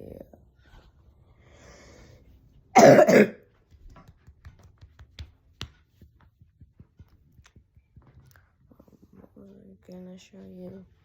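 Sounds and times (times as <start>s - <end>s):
boy coughing: 2.8s - 3.4s.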